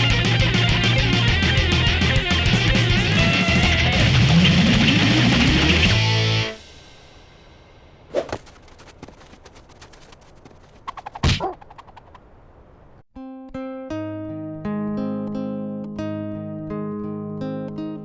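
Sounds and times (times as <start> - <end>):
guitar-driven cartoon music: 0.0 - 6.7, 13.2 - 18.0
short swishing hits: 8.1 - 12.3.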